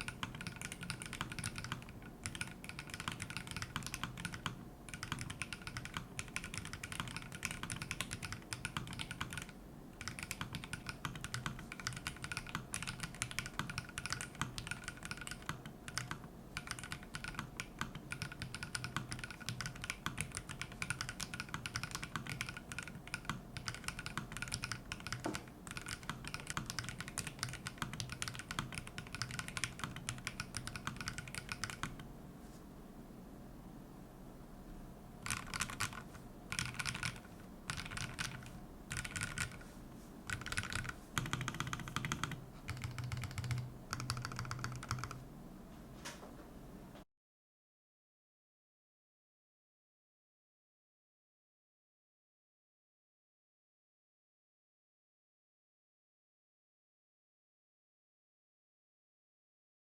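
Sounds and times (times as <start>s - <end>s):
mechanical keyboard typing: 0.0s - 32.0s, 35.2s - 39.7s, 40.3s - 45.2s.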